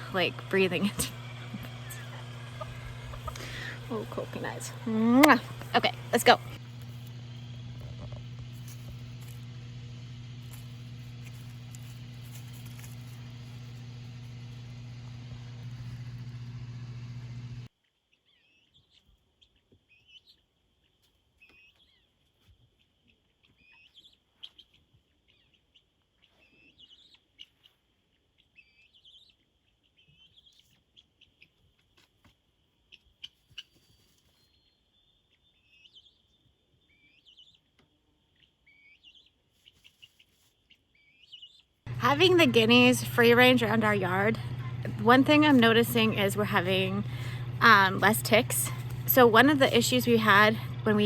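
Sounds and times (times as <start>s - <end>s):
birds chirping: 0.0s - 17.2s, 38.3s - 51.0s
steady low hum: 0.0s - 17.7s, 41.9s - 51.0s.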